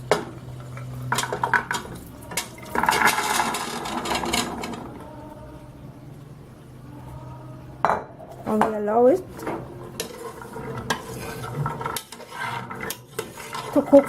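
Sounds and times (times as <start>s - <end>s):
metal spoon scraping pot: 1.1s - 4.9s, 9.4s - 14.0s
sizzling in hot oil: 9.4s - 14.0s.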